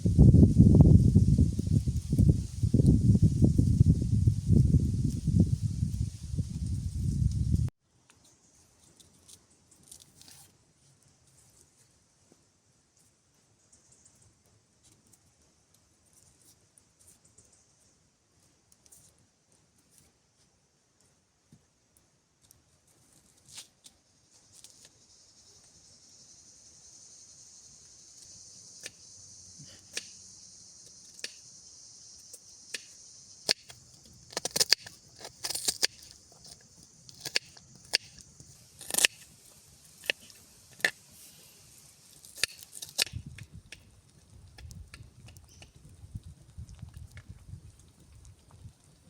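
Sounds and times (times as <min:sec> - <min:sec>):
campfire cooking sizzle: 0:00.0 - 0:07.8, 0:26.0 - 0:49.0
fire popping and crackling: 0:33.5 - 0:49.0.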